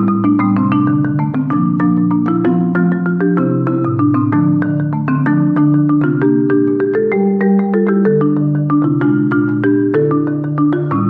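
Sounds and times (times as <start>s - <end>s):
marimba-like struck notes: 0.0s - 11.0s.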